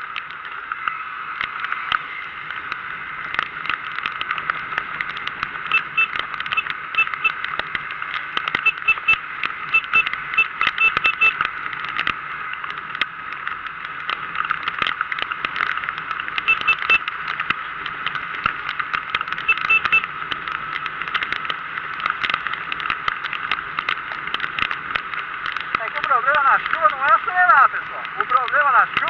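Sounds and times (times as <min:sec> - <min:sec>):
muffled riding noise in rain: 0:00.0 - 0:29.0
raindrops ticking on microphone: 0:00.0 - 0:29.0
faint high beep: 0:08.6 - 0:11.4, 0:19.5 - 0:20.0.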